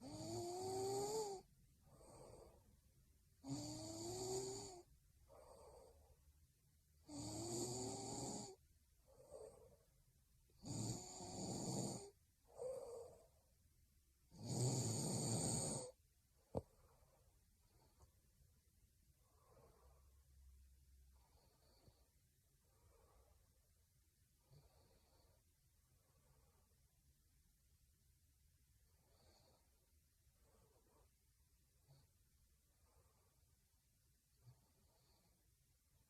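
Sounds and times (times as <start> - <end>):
woman snoring: 0.0 - 2.6, 3.4 - 6.0, 7.0 - 9.7, 10.6 - 13.3, 14.3 - 16.0.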